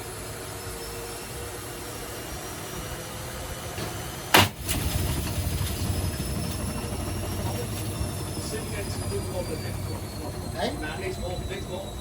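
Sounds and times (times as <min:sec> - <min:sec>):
loud sharp bang: 0:04.3 - 0:04.9.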